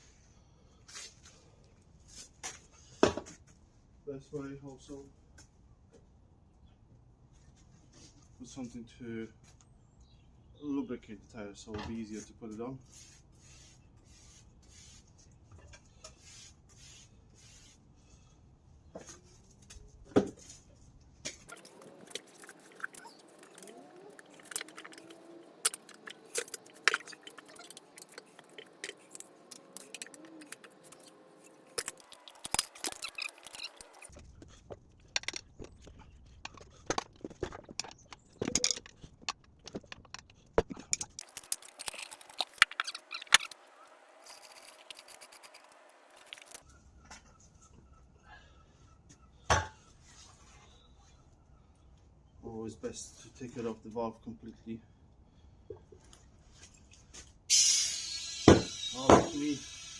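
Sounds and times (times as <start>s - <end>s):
tyre clicks and scrapes on rim: 21.4s - 46.6s.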